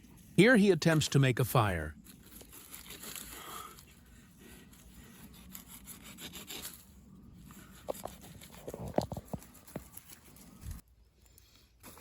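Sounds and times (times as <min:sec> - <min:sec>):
wood rasping against wood: 0:05.0 - 0:06.8.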